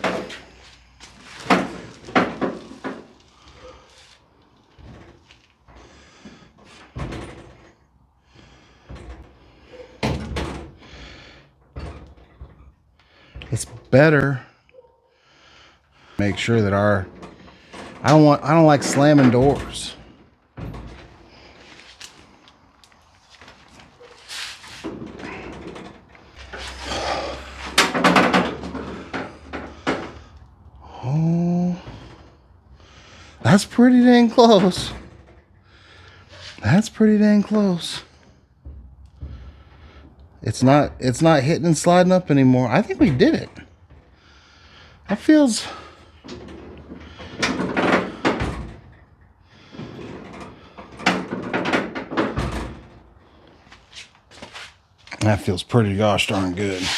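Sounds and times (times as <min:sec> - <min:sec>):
rustling and scraping: 0:00.0 - 0:07.8, 0:16.0 - 0:30.4, 0:45.7 - 0:55.5, 0:56.1 - 0:56.9.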